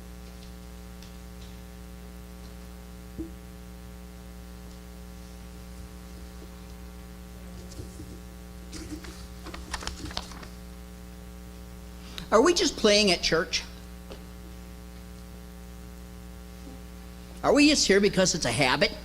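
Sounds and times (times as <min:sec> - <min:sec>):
electrical mains hum: 0:00.0 - 0:19.0
faint clicks and rustles: 0:07.5 - 0:10.6.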